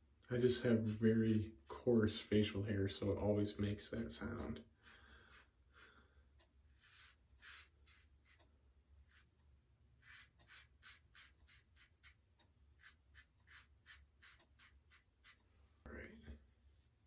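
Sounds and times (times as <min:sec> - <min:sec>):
razor scratching beard stubble: 0:00.7 - 0:01.6, 0:06.8 - 0:08.4, 0:10.0 - 0:12.2, 0:12.8 - 0:15.4.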